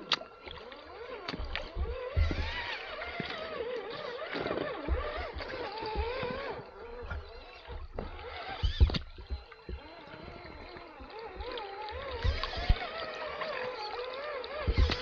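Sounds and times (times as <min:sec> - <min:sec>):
electric motor whining: 0:00.0 - 0:15.0
chassis knocking on rough ground: 0:04.7 - 0:09.9, 0:10.5 - 0:13.0, 0:14.5 - 0:15.0.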